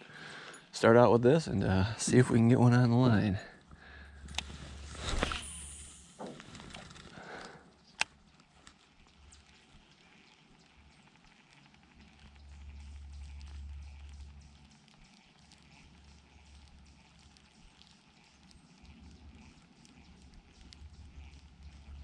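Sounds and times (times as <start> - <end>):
faint irregular ticks and knocks: 6.2 - 22.0.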